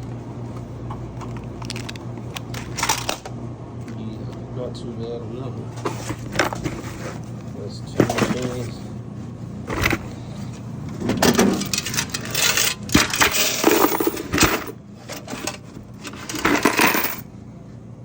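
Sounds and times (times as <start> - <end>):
coins clattering and jingling: 11.4 - 17.3.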